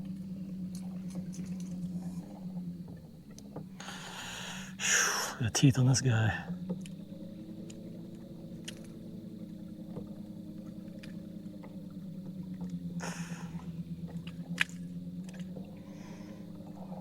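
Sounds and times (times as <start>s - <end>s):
boat motor humming: 0.0s - 17.0s
small clicks: 6.7s - 7.0s, 7.6s - 9.0s, 13.5s - 15.7s.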